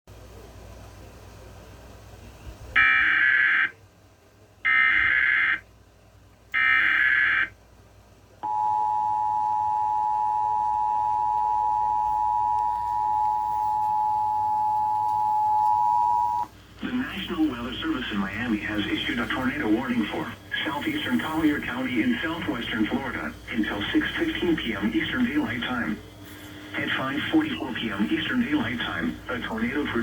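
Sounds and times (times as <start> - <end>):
steady two-tone attention signal: 8.4 - 16.5.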